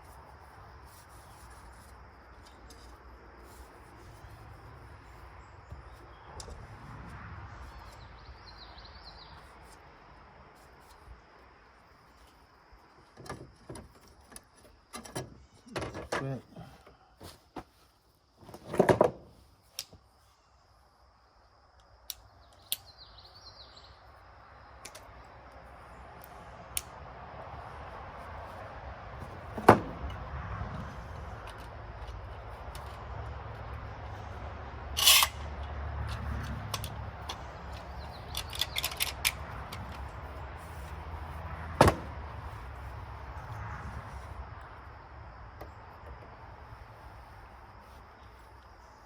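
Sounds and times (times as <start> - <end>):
small sharp clicks: 21.8 - 22.9
bird chirping: 22.3 - 24.1, 37.7 - 39.0.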